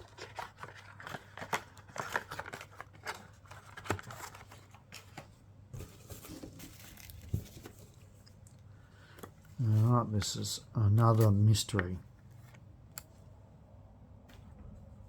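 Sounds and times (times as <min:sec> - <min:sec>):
packaging rustling and crinkling: 0:00.0 - 0:08.2.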